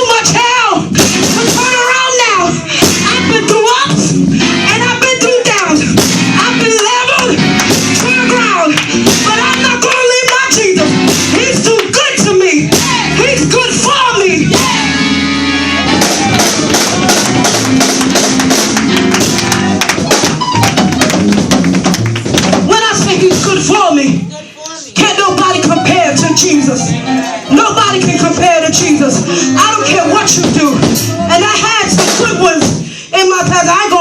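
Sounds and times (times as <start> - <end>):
sustained instrument chords: 14.6 - 19.9
sharp percussive taps: 16.0 - 23.5.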